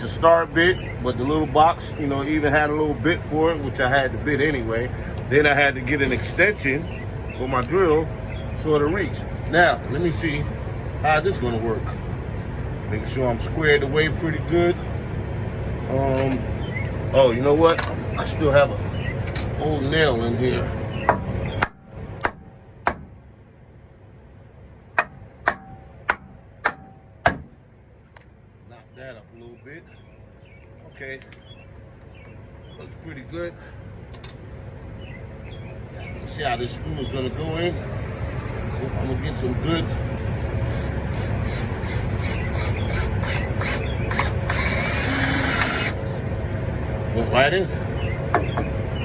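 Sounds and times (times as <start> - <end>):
hammer blows ringing: 25.0 - 27.5
cordless drill driving screw: 40.7 - 46.0.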